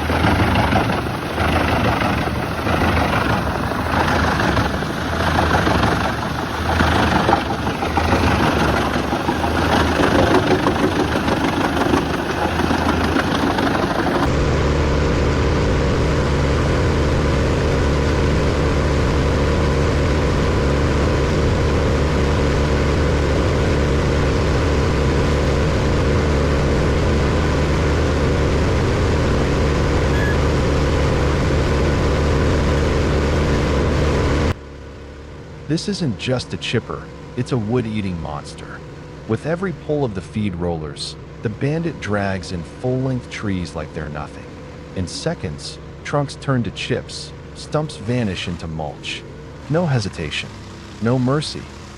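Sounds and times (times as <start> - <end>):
wood chipper crunching and knocking: 0.0 - 14.3
heavy engine drone: 0.0 - 51.9
low hum: 0.0 - 51.9.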